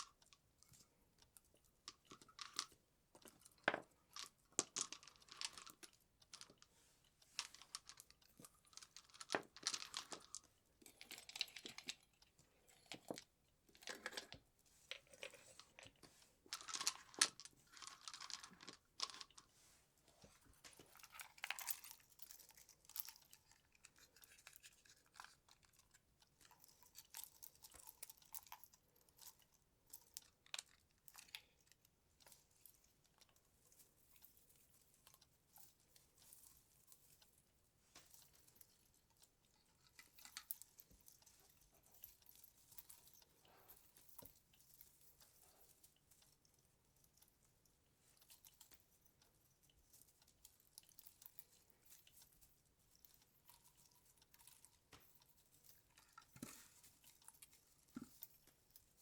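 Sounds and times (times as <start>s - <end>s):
decorations crinkling rustles: 0.0s - 59.0s.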